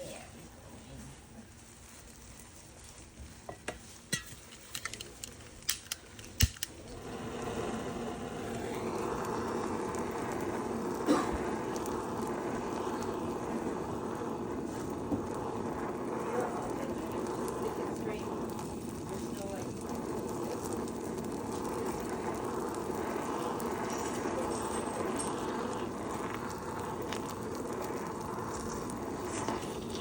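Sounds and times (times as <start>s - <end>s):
sandwich sizzling in a pan: 0.0s - 30.0s
kitchen utensils clicking: 4.1s - 6.8s.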